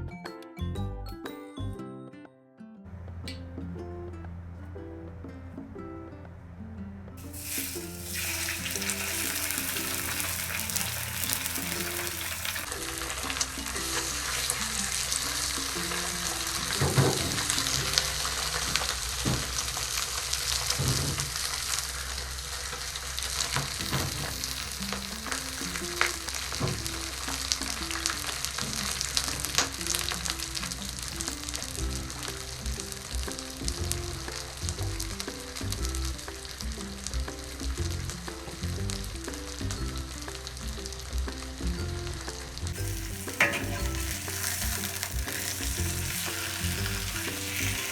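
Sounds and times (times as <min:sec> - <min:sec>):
food sizzling in a pan: 0:07.2 - 0:33.6, 0:42.8 - 0:47.9
utensil knocking against pan: 0:42.8 - 0:47.9.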